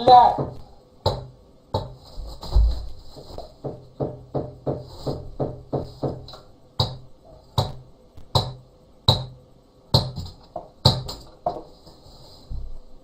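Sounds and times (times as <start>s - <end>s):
knocking on hard surface: 3.6s - 7.0s.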